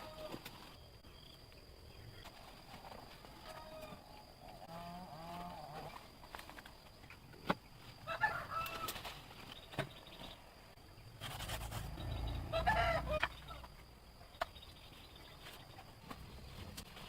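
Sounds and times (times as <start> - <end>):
chicken calling: 11.8 - 13.7.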